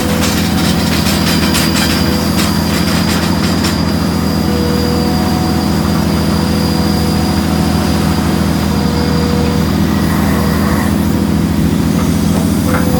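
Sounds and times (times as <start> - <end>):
jaw crusher and diesel engine drone: 0.0 - 12.9.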